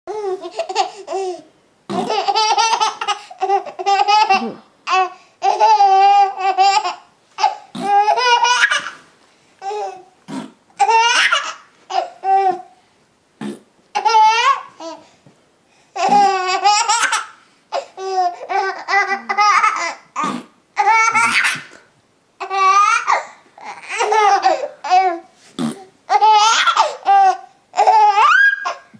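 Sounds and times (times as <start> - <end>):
baby laughing: 0.1 - 9.0, 10.8 - 12.7, 13.9 - 15.0, 16.0 - 25.3, 26.1 - 28.9.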